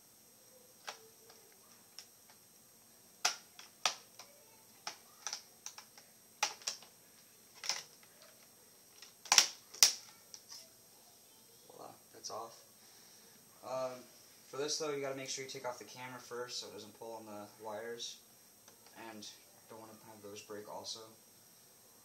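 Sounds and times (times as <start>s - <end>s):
plastic clips snapping loose: 9.0s - 10.5s.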